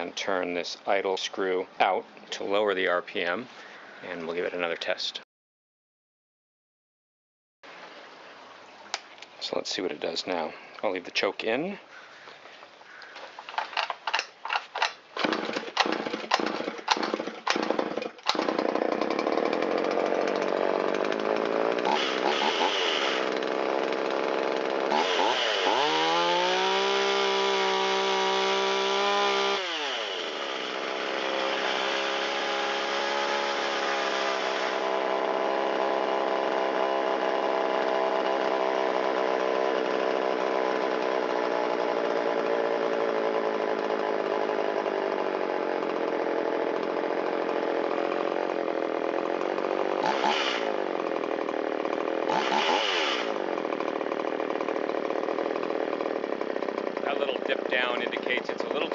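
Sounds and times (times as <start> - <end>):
chainsaw starting and revving: 13.6 - 58.9.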